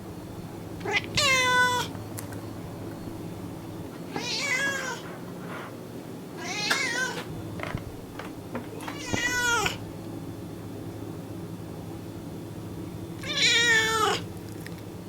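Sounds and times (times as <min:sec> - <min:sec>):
cat meowing: 0:00.8 - 0:01.9, 0:04.1 - 0:05.0, 0:06.4 - 0:07.3, 0:08.8 - 0:09.8, 0:13.2 - 0:14.3.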